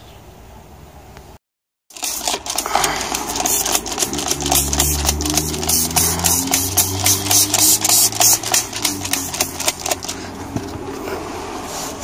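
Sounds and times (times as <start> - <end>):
rapid scrubbing on steering wheel: 2.0 - 10.3.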